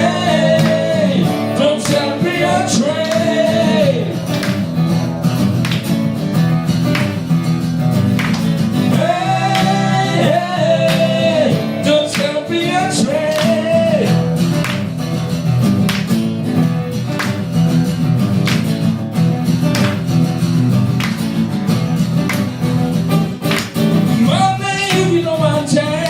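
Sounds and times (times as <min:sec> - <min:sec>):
live band playing: 0:00.0 - 0:25.9
bending lead guitar melody: 0:00.0 - 0:26.0.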